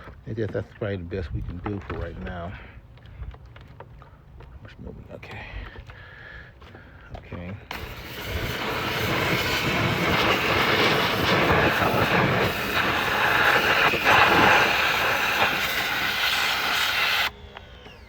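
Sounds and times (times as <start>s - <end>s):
pressure washer spray hissing: 7.7s - 17.3s.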